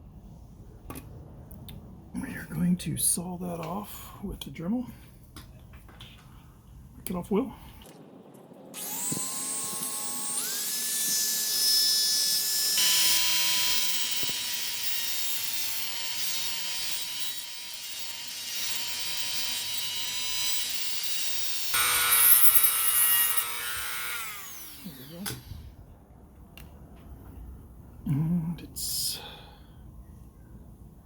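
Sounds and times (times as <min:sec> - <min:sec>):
rotary tool grinding metal: 0:08.8 - 0:25.6.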